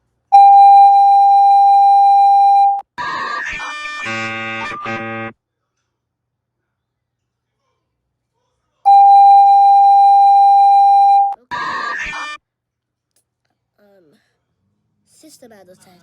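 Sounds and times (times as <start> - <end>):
loud steady beep: 0.4 - 2.8, 4.1 - 5.3, 8.9 - 11.4
stacked electronic tones: 0.4 - 2.8, 4.1 - 5.3, 8.9 - 11.4.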